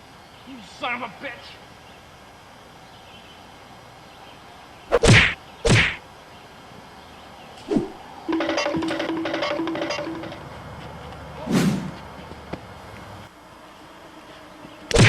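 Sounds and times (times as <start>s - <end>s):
whooshing whacks: 4.9s - 6.0s, 7.7s - 8.0s, 11.4s - 12.0s
dull thud: 5.0s - 6.0s
music with wood-block beat: 8.3s - 10.4s.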